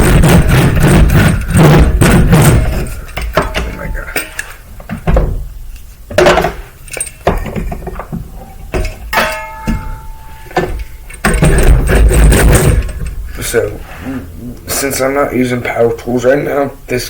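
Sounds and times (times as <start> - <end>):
hand tools knocking and clinking: 0.2 - 5.4, 6.1 - 13.2
short ringing clink: 9.2 - 10.5.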